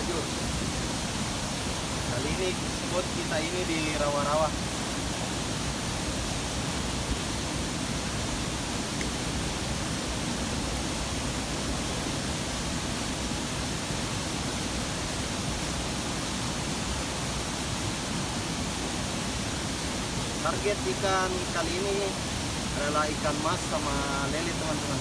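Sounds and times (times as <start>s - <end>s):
steady rushing hiss: 0.0s - 25.0s.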